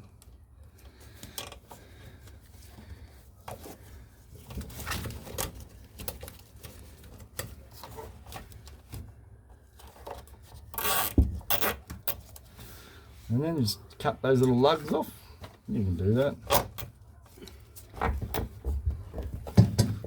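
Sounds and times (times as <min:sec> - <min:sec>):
cable ties clicking and rustling: 0:00.0 - 0:12.6.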